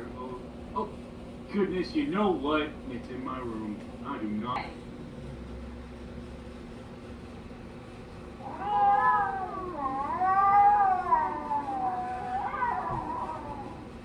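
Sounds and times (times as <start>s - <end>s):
child imitating cat meows: 8.4s - 13.8s.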